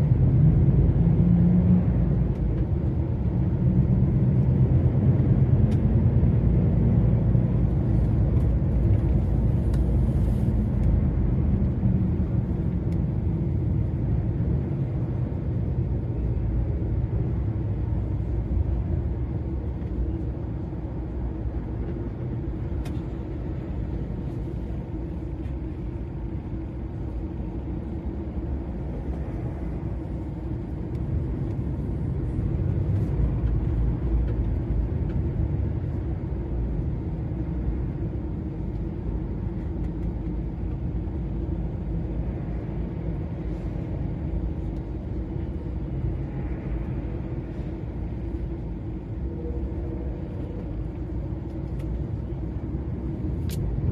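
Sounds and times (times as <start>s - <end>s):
lorry diesel engine rumble: 0.0s - 53.9s
road noise: 0.0s - 53.9s.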